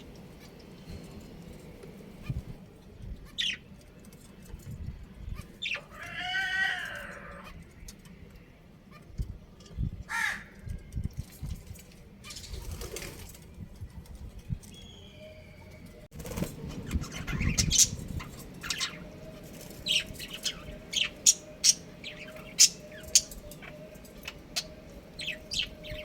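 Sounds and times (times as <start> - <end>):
birds calling: 3.2 - 3.7, 5.2 - 9.2, 14.7 - 26.0.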